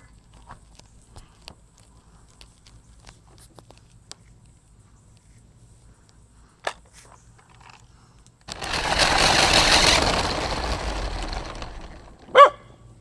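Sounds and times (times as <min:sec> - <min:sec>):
buggy crunching and rattling over rocks: 0:08.5 - 0:12.5.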